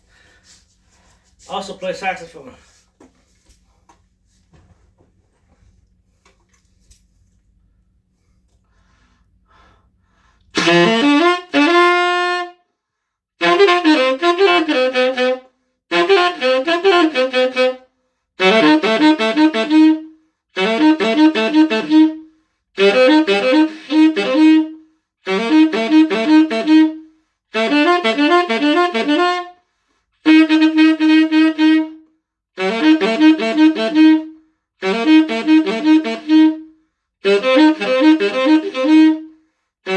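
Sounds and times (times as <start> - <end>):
tenor saxophone playing: 10.5 - 12.7, 13.4 - 39.9.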